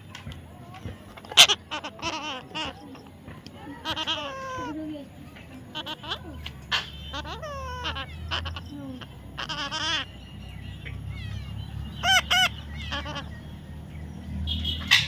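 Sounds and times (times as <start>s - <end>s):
faint chirps: 0.1s - 15.0s
parrot calling: 0.6s - 13.6s
parrot squawks: 1.1s - 3.1s, 3.8s - 4.8s, 5.7s - 10.1s, 11.1s - 13.4s.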